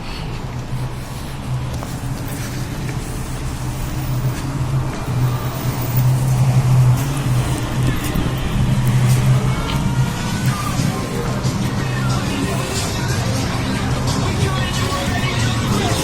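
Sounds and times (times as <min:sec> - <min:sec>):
city street traffic: 0:00.0 - 0:16.0
vehicle engine humming: 0:00.0 - 0:16.0.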